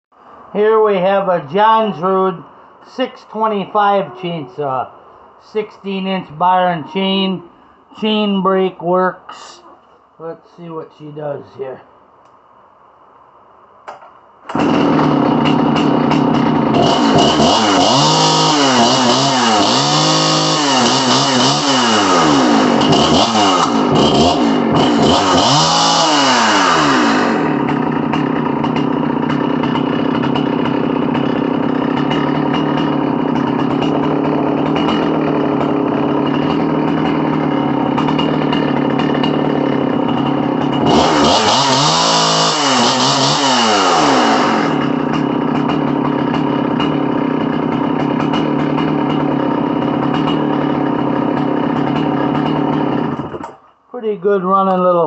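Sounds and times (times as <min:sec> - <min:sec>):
chainsaw revving and idling: 0:14.5 - 0:53.6.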